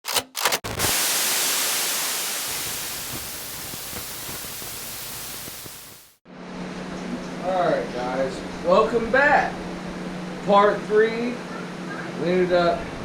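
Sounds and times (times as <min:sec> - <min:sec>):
short noise bursts: 0:00.6 - 0:06.2
static-like hiss: 0:00.7 - 0:06.2.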